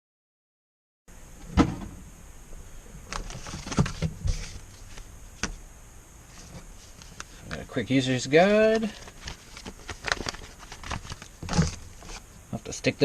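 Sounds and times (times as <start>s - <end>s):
packaging rustling: 3.1s - 5.6s, 8.6s - 12.3s.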